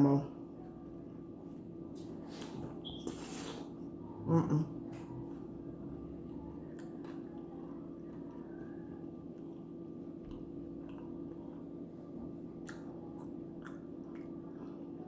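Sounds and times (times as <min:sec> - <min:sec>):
steady low hum: 0:00.0 - 0:15.0
person chewing food: 0:06.6 - 0:15.0.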